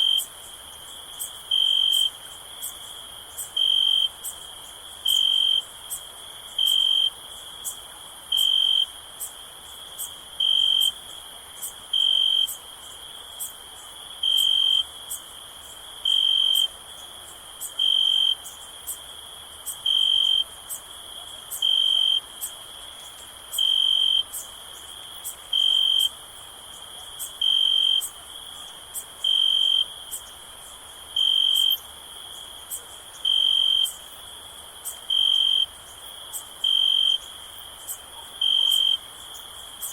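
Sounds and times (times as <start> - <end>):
cricket chirping: 0.0 - 39.9
high-pitched insect trill: 0.0 - 39.9.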